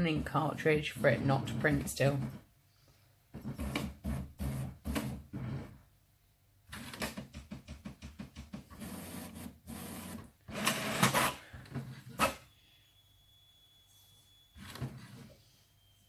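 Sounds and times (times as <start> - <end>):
inkjet printer mechanism running: 8.7 - 11.4.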